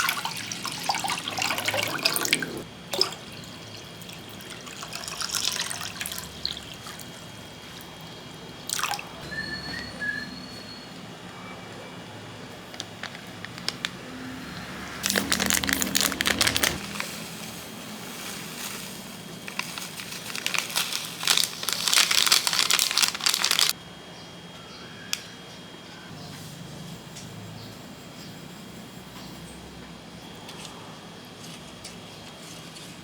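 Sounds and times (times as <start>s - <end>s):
packaging crinkling: 12.7s - 14.0s, 15.0s - 23.8s.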